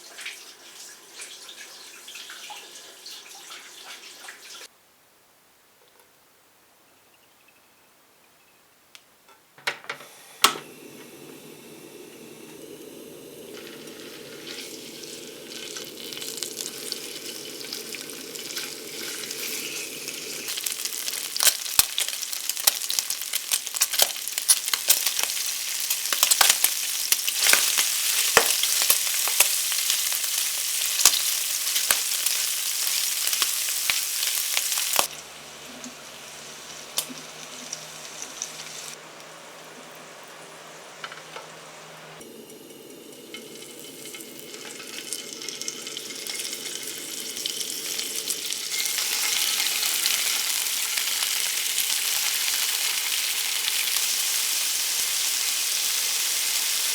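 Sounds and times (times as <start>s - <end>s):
food sizzling in a pan: 0.0s - 4.7s, 10.0s - 56.9s
faint hiss: 9.9s - 22.6s.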